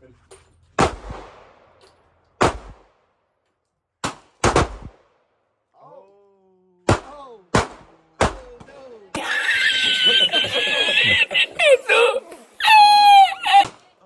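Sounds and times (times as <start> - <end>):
pistol shots: 0.8 - 3.1, 4.0 - 5.2, 6.9 - 8.7.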